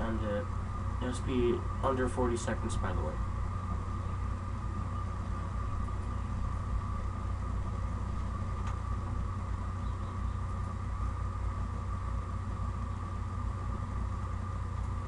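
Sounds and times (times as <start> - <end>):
low machine hum with whine: 0.0 - 15.0.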